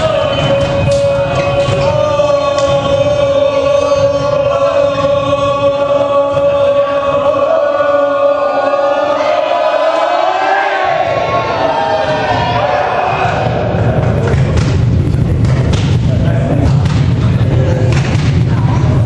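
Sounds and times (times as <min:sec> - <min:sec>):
group singing a long note: 0:00.0 - 0:14.5.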